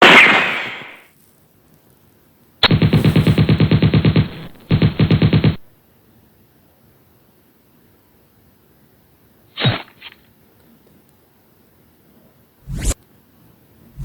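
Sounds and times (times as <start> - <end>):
automatic gunfire bursts: 2.6 - 5.7.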